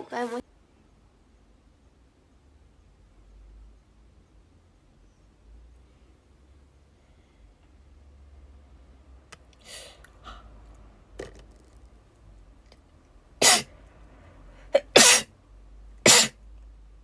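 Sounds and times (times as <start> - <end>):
woman speaking: 0.0 - 0.4
woman sneezing: 13.4 - 13.7, 14.8 - 15.3, 16.1 - 16.4.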